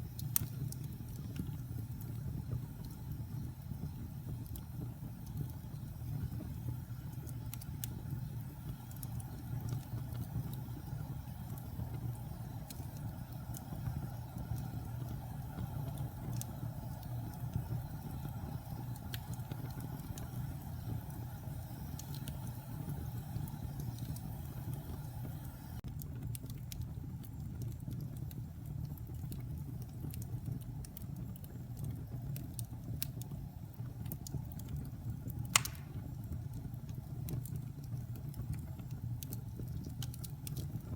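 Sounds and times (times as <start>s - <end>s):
fire crackles and ticks: 0.0s - 40.9s
wood fire rumbling: 0.0s - 40.9s
sharp pop from fire: 35.5s - 36.2s.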